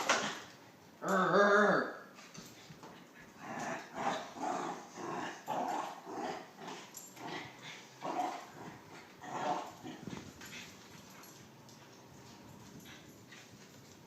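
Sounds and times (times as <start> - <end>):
dog growling: 1.0 - 2.0, 3.4 - 10.2.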